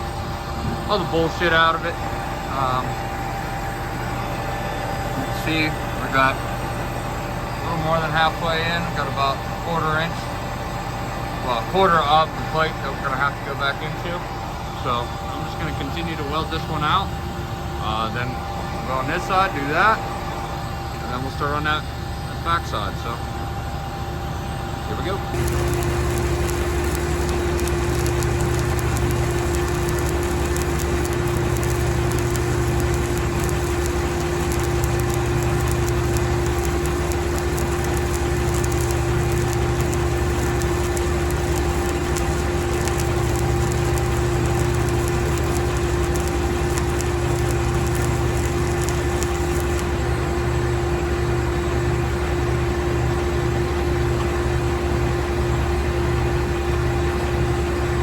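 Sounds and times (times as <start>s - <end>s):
steady hum: 25.2s - 51.1s
welding arc crackling: 25.3s - 50.4s.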